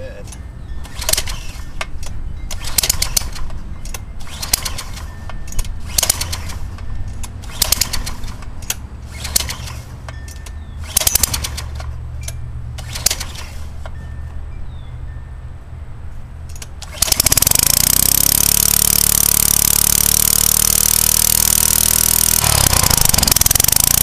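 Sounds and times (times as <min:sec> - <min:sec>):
loud rasping bursts: 0:05.8 - 0:06.8, 0:07.4 - 0:10.0, 0:10.8 - 0:11.9, 0:16.8 - 0:24.0
pressure washer engine hum: 0:17.0 - 0:24.0.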